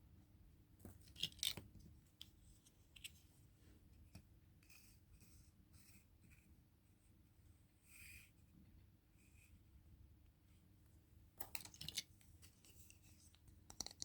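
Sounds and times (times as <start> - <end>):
soft rustling of packaging: 0.6 - 14.0
clicks and taps on packaging: 13.7 - 14.0.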